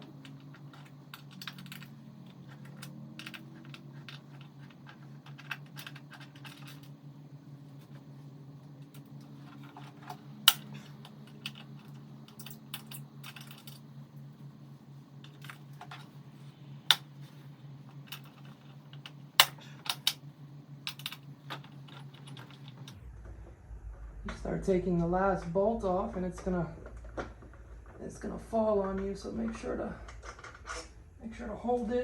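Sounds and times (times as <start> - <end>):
allen key clicking on bolts: 0.0 - 8.1, 8.7 - 14.2, 15.2 - 16.2, 16.9 - 23.0
steady low hum: 0.0 - 32.0.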